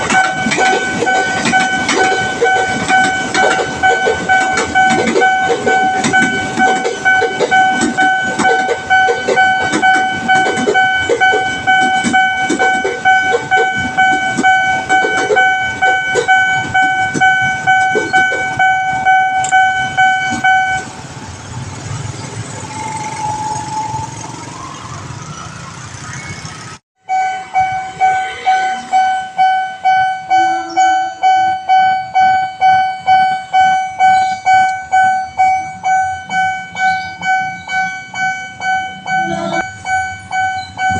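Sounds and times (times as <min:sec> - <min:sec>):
level crossing alarm bell: 0:00.0 - 0:20.9, 0:22.4 - 0:40.9
passing train rumble and clatter: 0:00.0 - 0:40.9
road traffic engine noise: 0:00.0 - 0:40.9.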